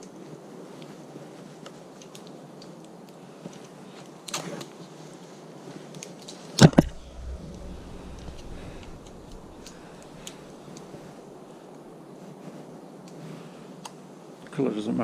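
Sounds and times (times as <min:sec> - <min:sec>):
rustle: 0:00.0 - 0:14.3.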